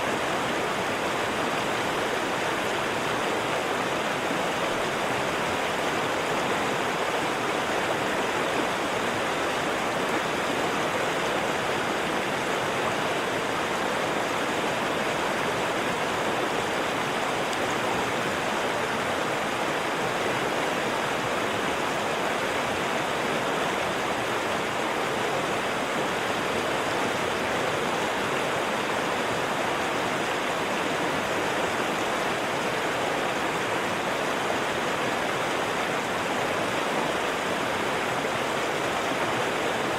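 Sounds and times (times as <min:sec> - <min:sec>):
river water flowing: 0:00.0 - 0:39.9.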